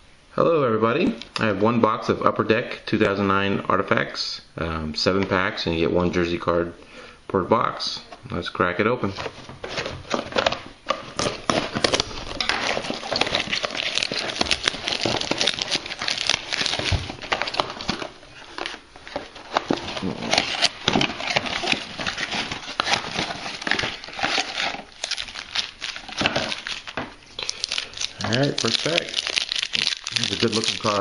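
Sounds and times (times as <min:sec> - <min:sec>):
packaging crinkling and tearing: 0:09.6 - 0:31.0.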